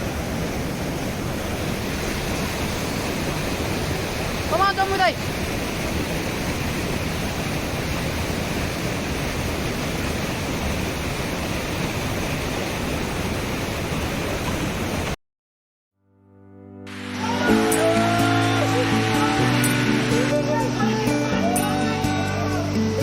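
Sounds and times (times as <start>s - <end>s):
waterfall rushing: 0.0s - 15.2s, 16.9s - 23.0s
music: 16.0s - 23.0s.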